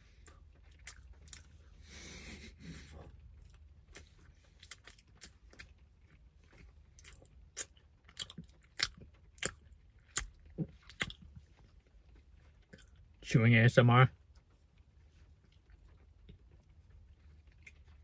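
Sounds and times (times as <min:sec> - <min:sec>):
wet mouth clicks and smacks: 0:07.0 - 0:11.2.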